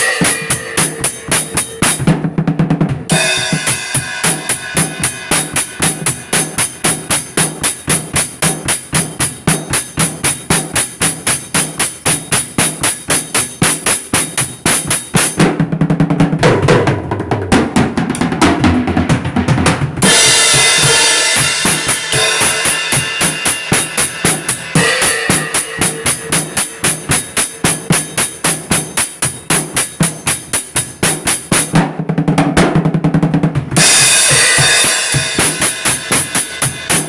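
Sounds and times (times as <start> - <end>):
fast drum beat: 0.0 - 37.0
cymbal crash wash: 20.0 - 29.0.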